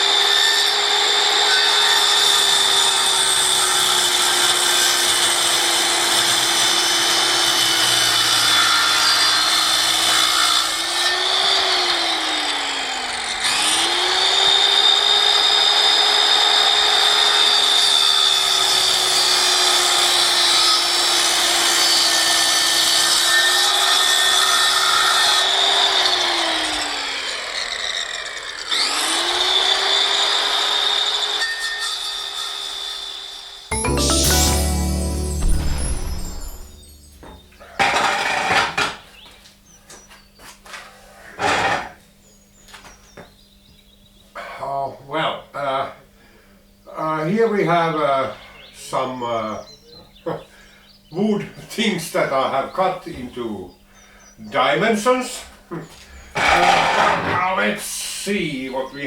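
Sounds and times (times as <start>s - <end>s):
power saw cutting wood: 0.0s - 33.6s, 36.2s - 39.0s, 56.4s - 57.7s.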